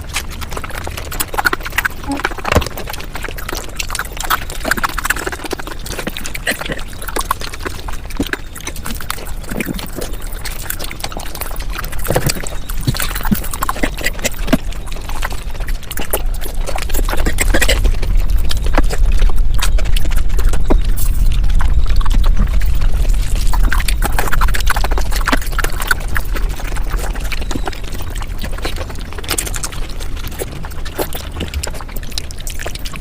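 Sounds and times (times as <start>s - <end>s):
sped-up chewing and mouth sounds: 0.0s - 33.0s
low rumble: 14.6s - 33.0s.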